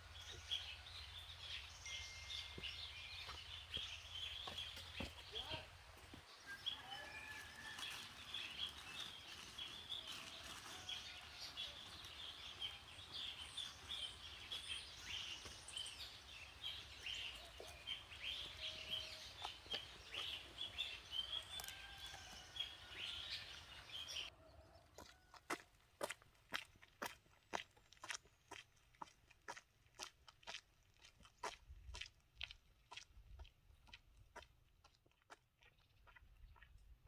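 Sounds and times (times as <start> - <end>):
birds chirping and twittering: 0.0 - 25.3, 35.6 - 37.0.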